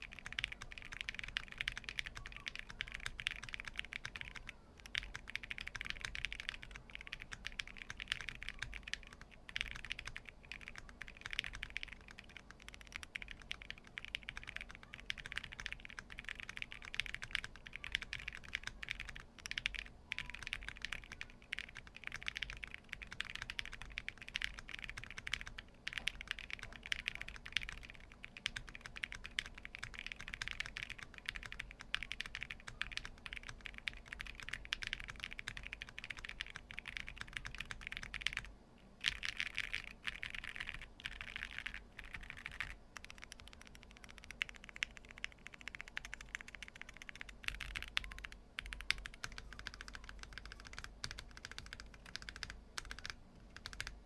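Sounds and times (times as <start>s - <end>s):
mechanical keyboard typing: 0.0s - 54.0s.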